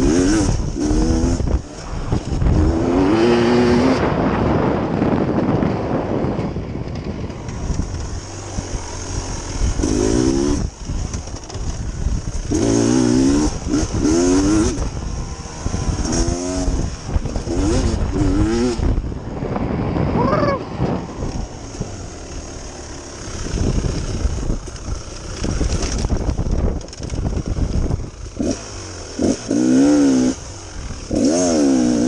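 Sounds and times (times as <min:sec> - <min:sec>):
dirt bike engine revving: 0:00.0 - 0:32.0.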